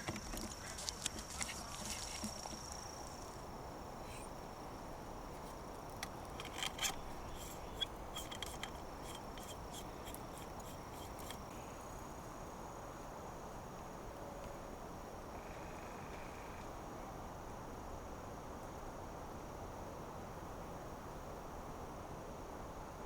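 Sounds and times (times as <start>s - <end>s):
light clicks and scrapes: 0.0s - 3.4s, 5.3s - 11.6s
faint outdoor background noise: 0.0s - 23.0s
high-pitched insect trilling: 0.1s - 12.9s.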